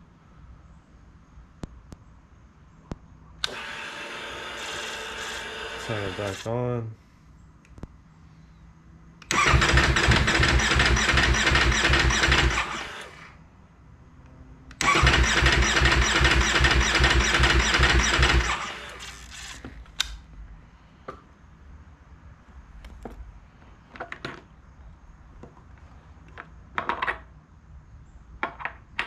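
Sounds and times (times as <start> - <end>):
motorcycle engine cranking: 9.3 - 13.1, 14.8 - 20.2.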